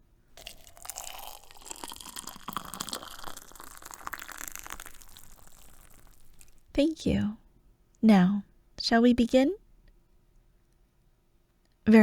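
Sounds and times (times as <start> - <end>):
tea pouring into cup: 0.4 - 6.7.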